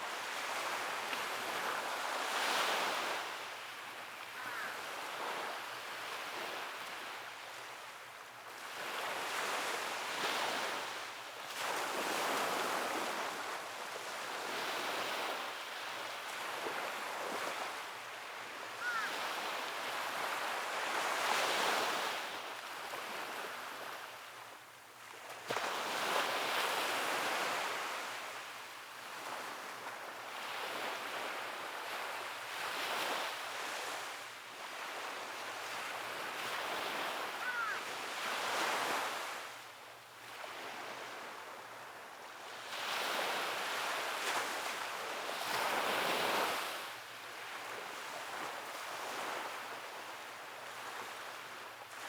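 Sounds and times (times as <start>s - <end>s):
ocean waves breaking on shore: 40.3s - 52.0s.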